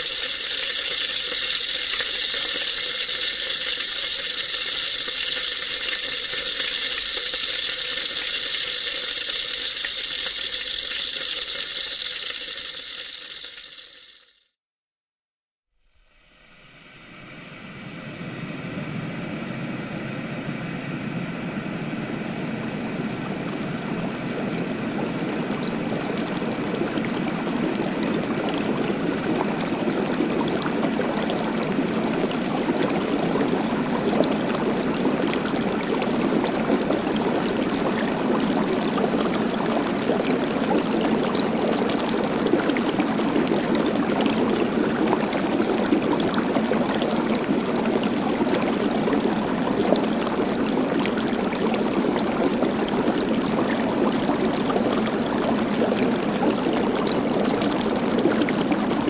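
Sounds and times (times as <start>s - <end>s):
water rushing: 21.8s - 59.0s.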